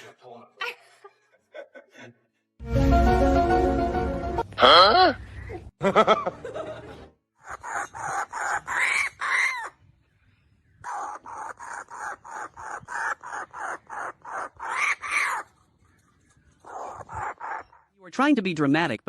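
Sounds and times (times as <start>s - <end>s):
rapid animal calls: 7.4s - 9.8s, 10.8s - 15.6s, 16.6s - 17.9s.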